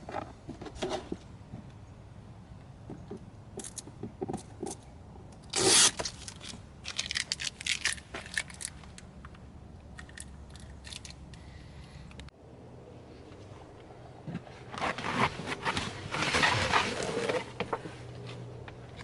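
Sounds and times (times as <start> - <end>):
rubber mat scraping and rubbing: 14.3 - 18.0.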